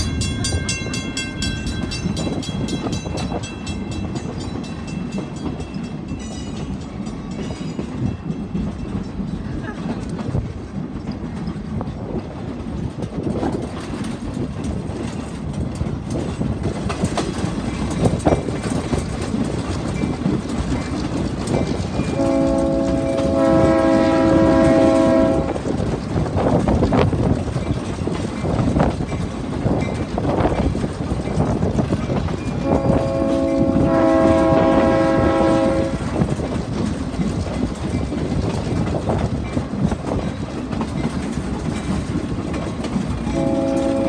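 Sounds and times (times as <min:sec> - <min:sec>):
train rumbling with rail clatter: 0:00.0 - 0:44.0
locomotive horn chord: 0:22.1 - 0:25.8, 0:32.6 - 0:36.2, 0:43.3 - 0:44.0.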